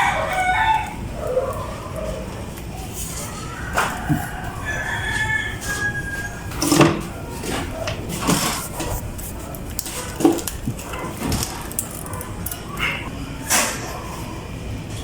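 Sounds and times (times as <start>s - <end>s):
rooster crowing: 0.0s - 2.3s, 3.1s - 7.8s.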